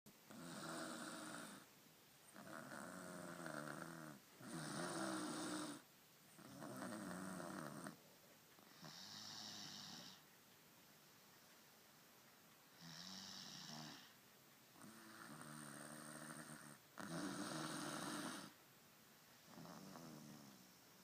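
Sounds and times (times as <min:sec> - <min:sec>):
person snoring: 0:00.3 - 0:01.6, 0:02.4 - 0:05.8, 0:06.4 - 0:08.0, 0:08.7 - 0:10.2, 0:12.8 - 0:14.1, 0:14.8 - 0:18.6, 0:19.5 - 0:20.7.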